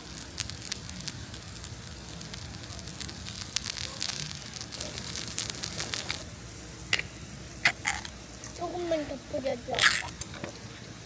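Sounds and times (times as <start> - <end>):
sharp spitting crackles: 0.0 - 6.3, 9.8 - 10.2
food sizzling in a hot pan: 0.0 - 6.7.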